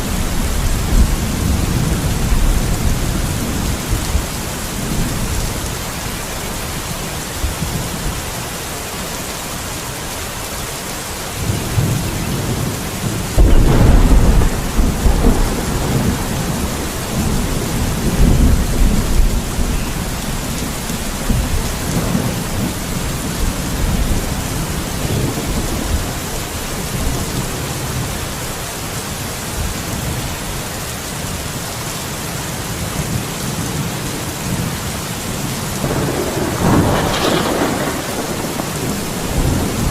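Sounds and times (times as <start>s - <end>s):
thunder rumbling: 0.0s - 6.2s, 11.4s - 28.1s, 35.8s - 39.9s
heavy rain: 0.0s - 39.9s
loud thunderclap: 11.7s - 26.2s, 35.8s - 39.9s.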